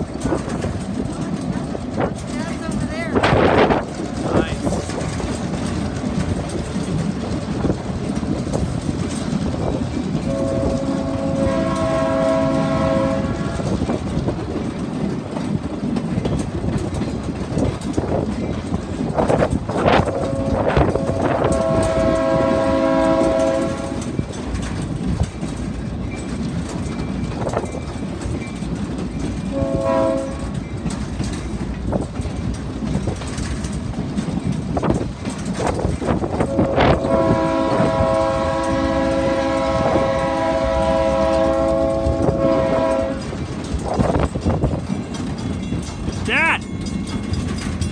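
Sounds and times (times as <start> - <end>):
train rumble and wheel clatter: 0.0 - 47.9
train horn blasts: 10.2 - 13.9, 19.8 - 24.1, 29.5 - 30.6, 36.4 - 43.4.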